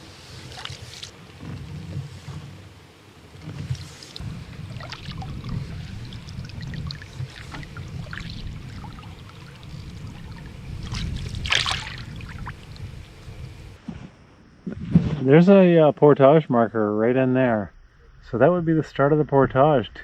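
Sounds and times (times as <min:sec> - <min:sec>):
paddle splashing in water: 0:00.0 - 0:02.7, 0:03.3 - 0:12.8
wind on microphone: 0:00.0 - 0:15.3
water dripping: 0:04.1 - 0:12.9.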